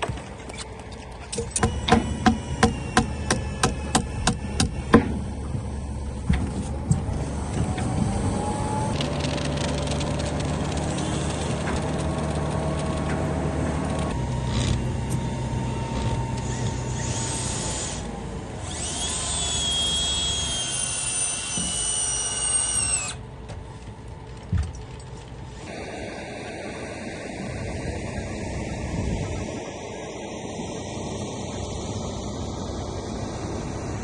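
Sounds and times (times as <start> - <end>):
low engine hum: 0.0 - 34.0
high-pitched drill whine: 1.6 - 4.9, 14.1 - 23.2.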